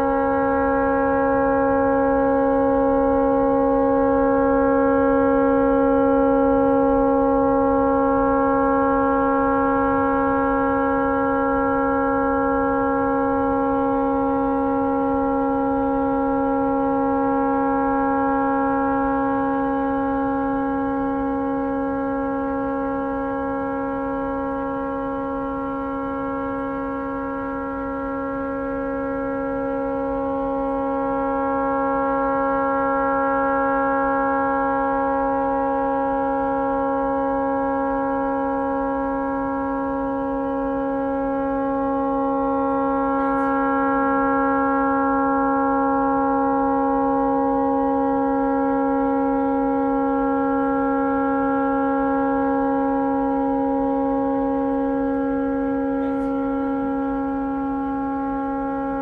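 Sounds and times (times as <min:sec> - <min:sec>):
tugboat horn continuous blast: 0:00.0 - 0:59.0.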